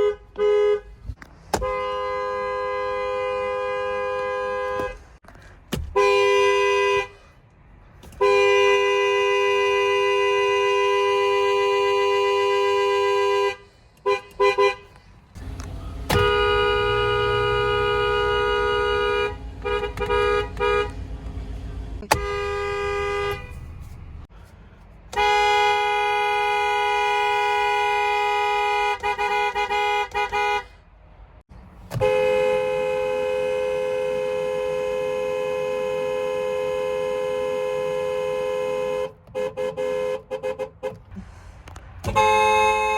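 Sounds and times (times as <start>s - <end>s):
car horns blasting and tooting: 0.0s - 5.2s, 5.8s - 7.3s, 8.0s - 24.4s, 25.1s - 30.8s, 31.9s - 41.3s, 41.9s - 42.9s
engine low rumble: 13.6s - 25.2s.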